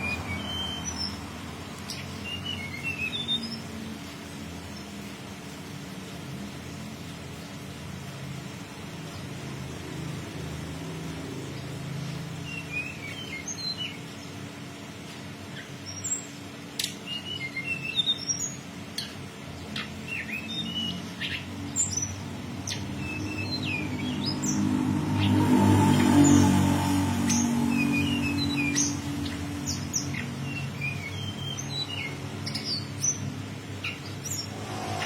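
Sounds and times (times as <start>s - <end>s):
bird chirping: 0.0s - 3.8s, 11.5s - 14.4s, 15.4s - 35.0s.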